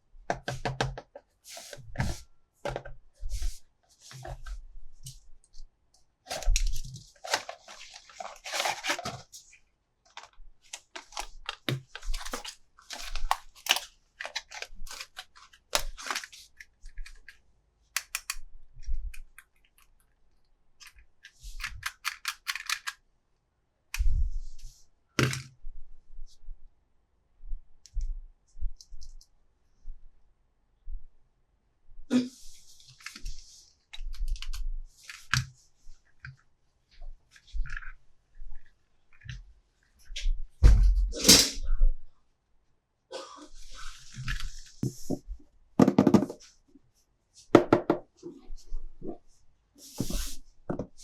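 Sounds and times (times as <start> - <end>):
plastic crinkling: 6.3 - 16.6
plastic toys clicking and tapping: 10.1 - 18.4, 20.8 - 23.0.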